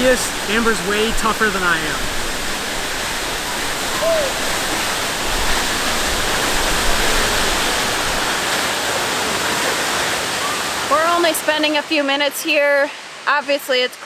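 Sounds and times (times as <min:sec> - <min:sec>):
waterfall rushing into pool: 0:00.0 - 0:14.0.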